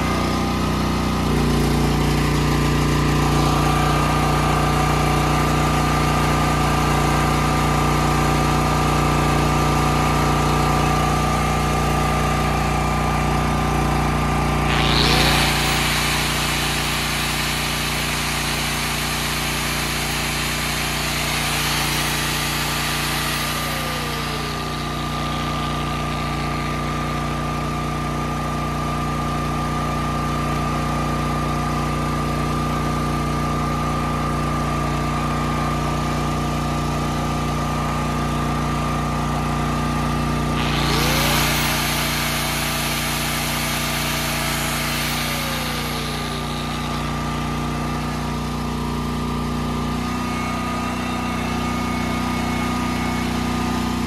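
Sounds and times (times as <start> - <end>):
generator engine running: 0.0 - 54.0
hissing noise with whine: 14.7 - 26.8, 40.6 - 48.0.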